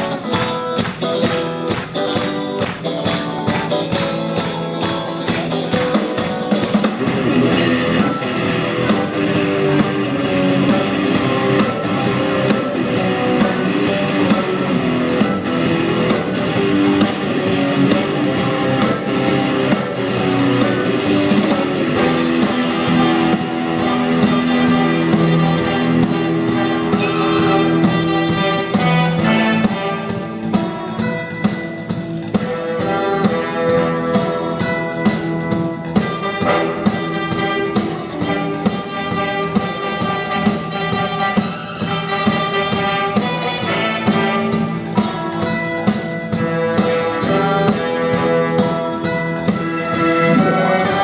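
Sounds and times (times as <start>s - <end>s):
steady drum beat: 0.0s - 51.0s
strummed guitar: 0.0s - 51.0s
sustained notes: 49.7s - 51.0s.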